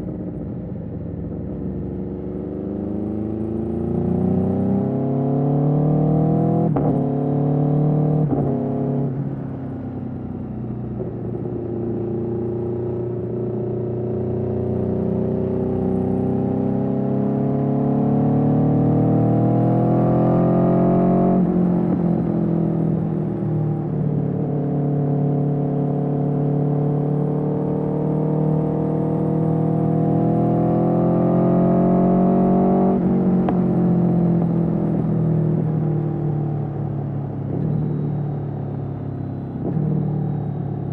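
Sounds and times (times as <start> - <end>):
motorcycle engine revving: 10.8 - 40.9.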